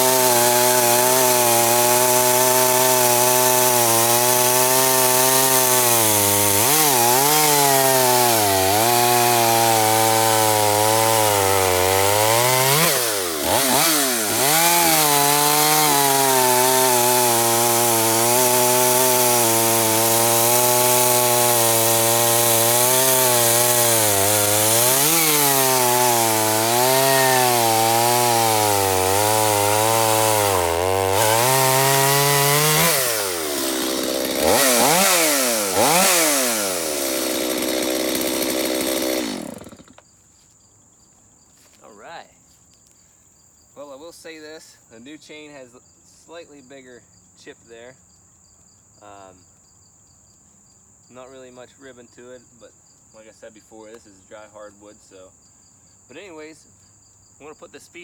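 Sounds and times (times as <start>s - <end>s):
chainsaw throttle blipping: 0.0s - 40.0s
chainsaw cutting log: 0.0s - 40.1s.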